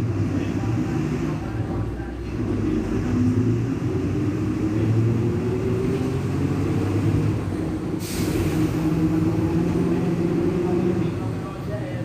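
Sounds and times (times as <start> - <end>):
loud differential drone: 0.0 - 11.6
bus diesel engine running: 0.0 - 12.0
air hiss burst: 8.0 - 8.9.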